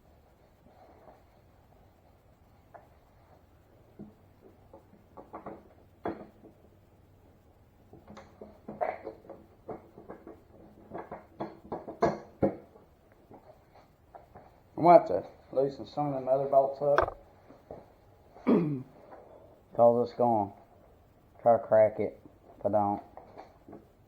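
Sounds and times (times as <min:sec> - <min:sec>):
tools tapping plastic fender: 0:17.0 - 0:17.2.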